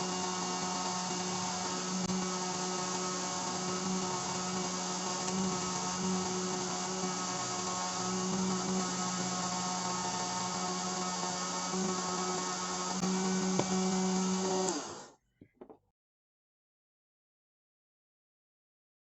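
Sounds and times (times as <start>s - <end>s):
rotary tool motor whirring: 0.0s - 15.2s.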